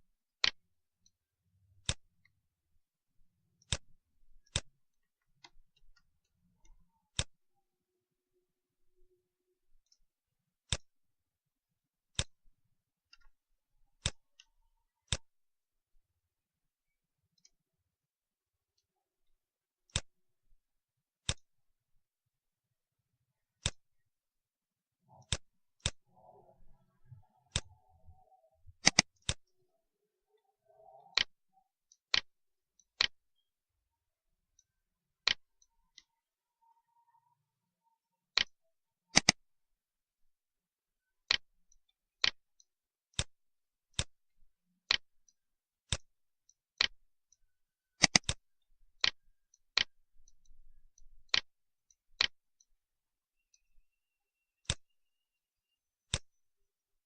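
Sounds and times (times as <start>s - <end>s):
computer mouse clicking: 0.4s - 2.4s, 3.5s - 7.4s, 9.8s - 10.9s, 12.1s - 12.4s, 13.1s - 15.3s, 19.8s - 20.2s, 21.2s - 21.5s, 23.4s - 24.0s, 25.0s - 29.7s, 30.3s - 33.5s, 34.6s - 37.3s, 38.3s - 39.4s, 41.2s - 44.2s, 44.8s - 48.4s, 49.0s - 52.8s, 54.6s - 54.9s, 56.1s - 56.4s.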